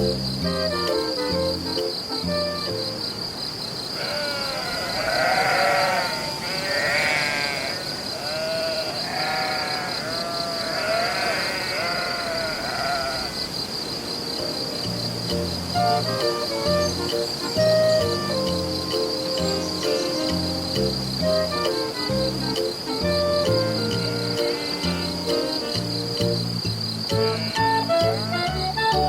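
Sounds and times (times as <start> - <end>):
crickets chirping: 0.0 - 29.0
sheep bleating: 4.0 - 13.3, 27.2 - 27.8.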